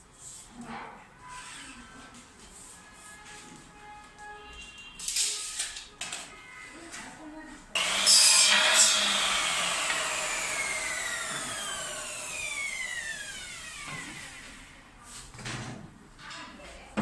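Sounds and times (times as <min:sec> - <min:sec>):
power tool motor winding down: 0:07.8 - 0:14.8.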